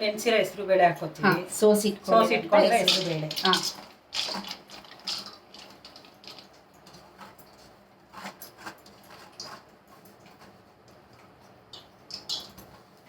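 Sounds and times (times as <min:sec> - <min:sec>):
utensil clinking on bowl: 0:02.6 - 0:07.6.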